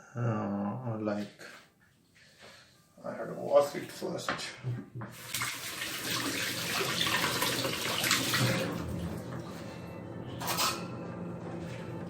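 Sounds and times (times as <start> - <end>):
water splashing into sink: 5.1 - 9.4
kitchen tap running: 5.1 - 9.5.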